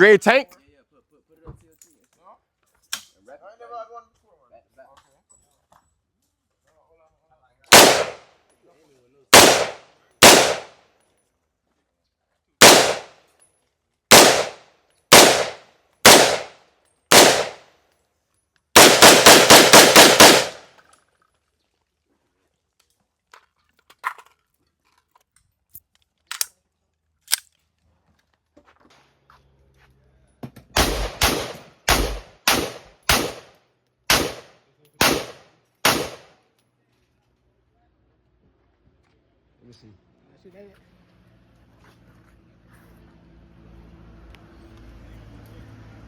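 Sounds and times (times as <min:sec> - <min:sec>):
faint gunshots: 0:07.7 - 0:08.3, 0:09.3 - 0:10.8, 0:12.6 - 0:13.2, 0:14.1 - 0:17.6, 0:18.8 - 0:20.7, 0:30.8 - 0:33.5, 0:34.1 - 0:36.3
gunshots: 0:07.7 - 0:08.3, 0:09.3 - 0:10.8, 0:12.6 - 0:13.2, 0:14.1 - 0:17.6, 0:18.8 - 0:20.7, 0:30.8 - 0:33.5, 0:34.1 - 0:36.3.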